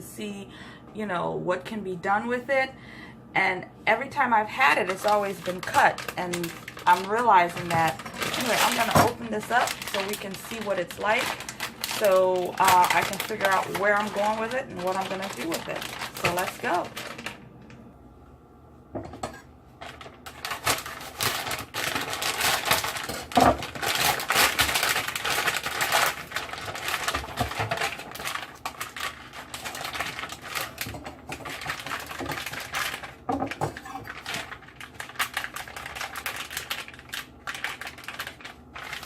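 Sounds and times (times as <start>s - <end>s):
plastic packaging crinkling: 4.4s - 17.7s, 19.7s - 39.0s.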